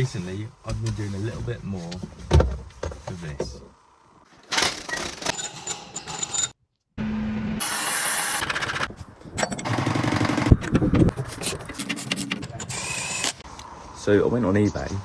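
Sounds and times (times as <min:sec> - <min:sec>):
metal clanking and tool noise: 0:09.3 - 0:13.4.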